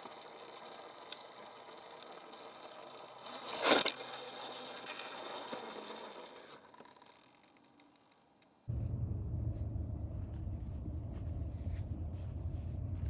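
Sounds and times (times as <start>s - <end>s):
electric motor and drivetrain whirring: 0.0s - 13.0s.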